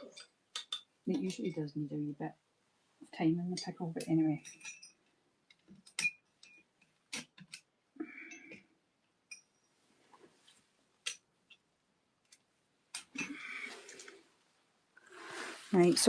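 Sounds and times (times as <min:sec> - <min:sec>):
small metal tools clinking: 0:04.4 - 0:05.0.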